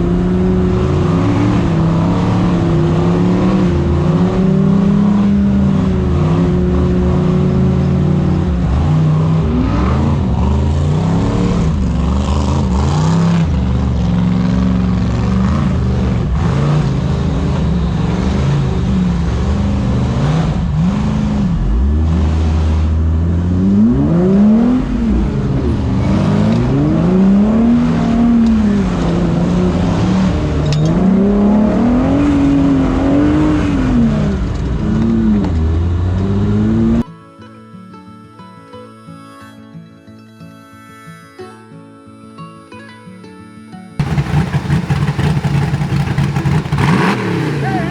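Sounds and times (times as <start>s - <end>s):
race vehicle engine revving: 0.0s - 37.0s, 44.0s - 47.9s.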